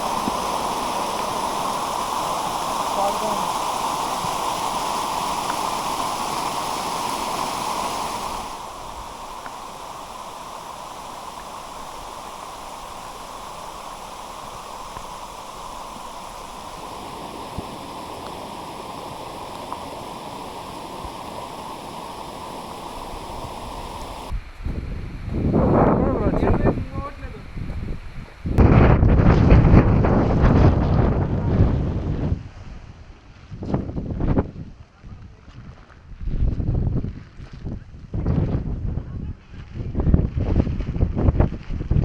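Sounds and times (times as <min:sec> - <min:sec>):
water rushing down stone steps: 0:00.0 - 0:24.3.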